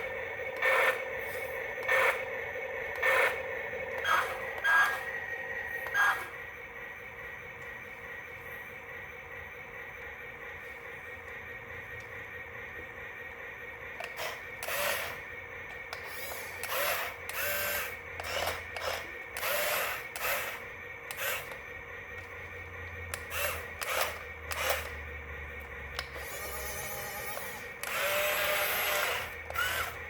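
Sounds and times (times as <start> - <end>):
small electric motor whirring: 0.0 - 6.5, 14.0 - 30.0
steady background hum: 0.0 - 30.0.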